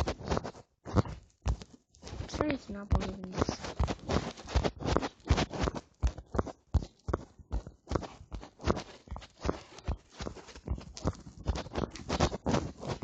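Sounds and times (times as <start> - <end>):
puzzle cube layers clacking: 0.0 - 13.0.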